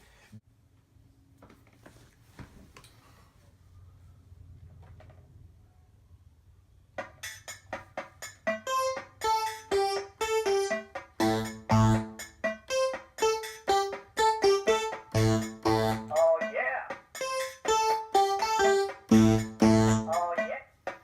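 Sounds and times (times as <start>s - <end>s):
electronic keyboard melody: 7.0s - 20.6s
low bass notes: 10.5s - 12.6s, 14.4s - 16.5s, 18.5s - 20.4s.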